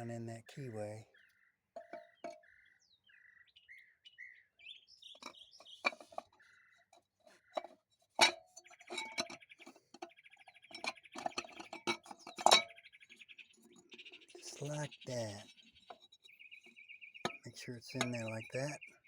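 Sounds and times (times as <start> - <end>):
small birds chirping: 0.0 - 19.0
metal clinks and knocks: 1.8 - 2.4, 5.2 - 6.4, 7.6 - 10.1, 10.7 - 12.8.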